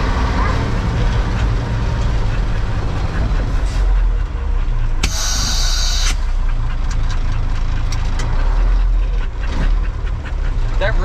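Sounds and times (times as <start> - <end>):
diesel engine low rumble: 0.0 - 11.0
air brake hiss: 5.0 - 6.3.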